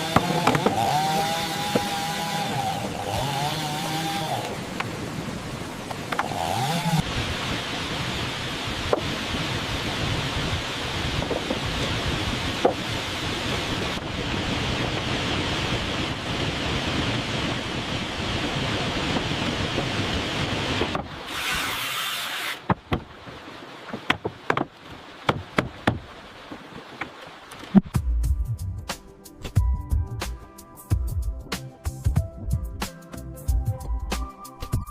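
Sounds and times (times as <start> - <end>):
sharp knocks and clicks: 0.1 - 0.8, 23.9 - 24.7.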